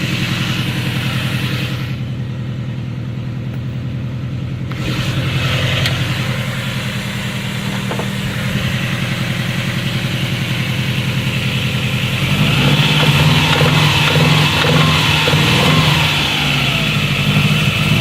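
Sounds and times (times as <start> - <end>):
car engine running: 0.0 - 18.0
engine knock: 4.7 - 18.0.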